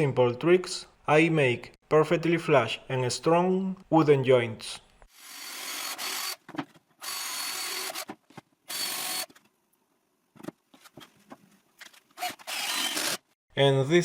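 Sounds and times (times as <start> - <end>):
cordless drill driving screws: 5.1 - 6.4, 7.0 - 9.4, 12.2 - 13.3.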